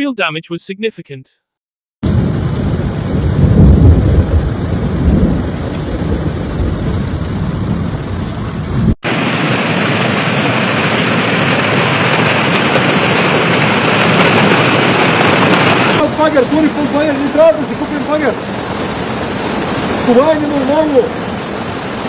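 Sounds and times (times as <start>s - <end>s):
loud low water rumble: 2.0s - 22.0s
steady hiss of rushing water: 9.0s - 22.0s.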